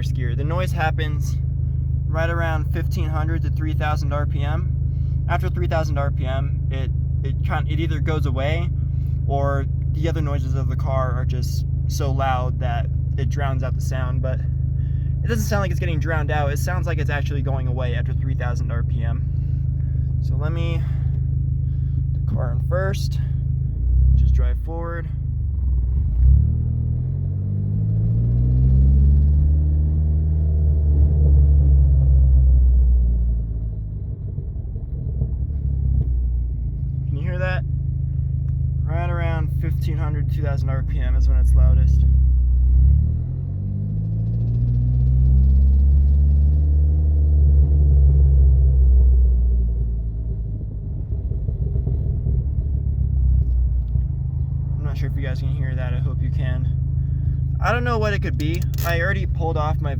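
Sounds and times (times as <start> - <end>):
engine ticking: 0.0 - 26.3, 33.5 - 46.6, 50.0 - 59.9
car engine revving: 0.0 - 59.9
engine top end ticking: 56.8 - 59.8.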